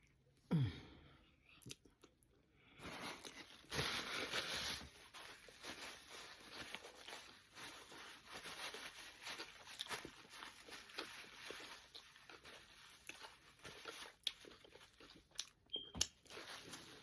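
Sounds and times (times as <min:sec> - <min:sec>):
wrapper rustling: 0:02.8 - 0:15.3, 0:16.2 - 0:17.0
chewing: 0:09.3 - 0:16.4.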